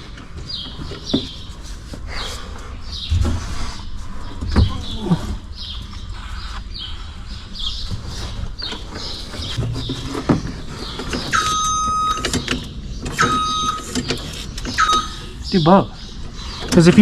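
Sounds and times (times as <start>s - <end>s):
backup alarm beeping: 11.2s - 12.5s, 13.1s - 15.8s.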